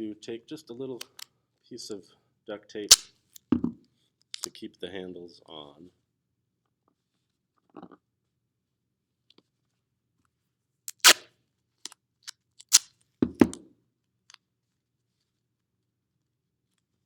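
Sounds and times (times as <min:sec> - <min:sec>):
duct tape ripping: 0:10.9 - 0:11.2, 0:12.6 - 0:12.9.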